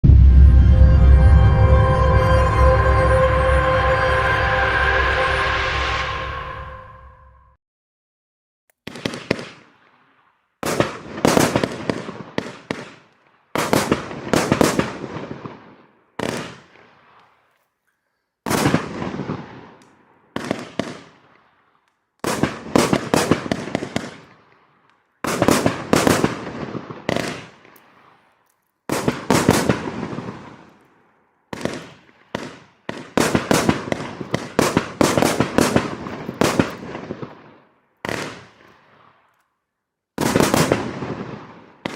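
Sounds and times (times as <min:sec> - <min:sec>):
firework bang volleys: 0:00.0 - 0:04.1.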